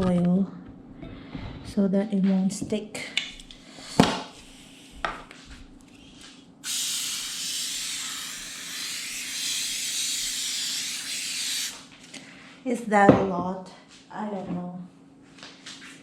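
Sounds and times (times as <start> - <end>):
aerosol spray hissing: 6.6 - 11.8.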